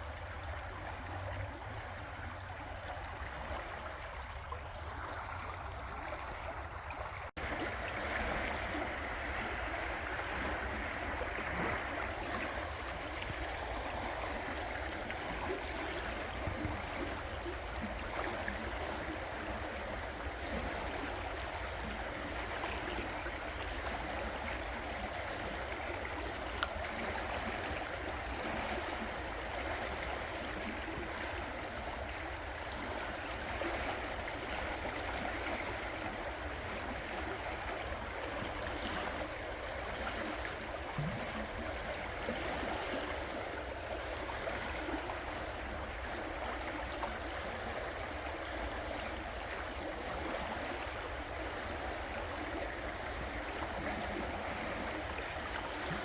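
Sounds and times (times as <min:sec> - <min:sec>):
river water flowing over rocks: 0:00.0 - 0:56.0.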